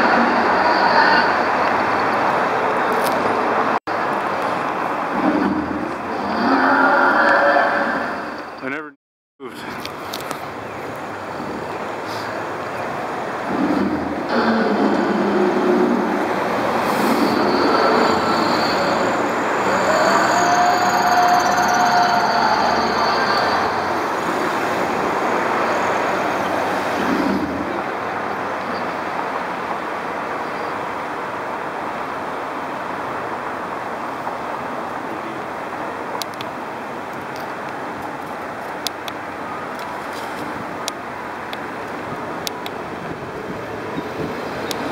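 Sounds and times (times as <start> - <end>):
high rising whine: 0.0 - 9.0, 10.4 - 29.1
city traffic noise: 0.0 - 44.9.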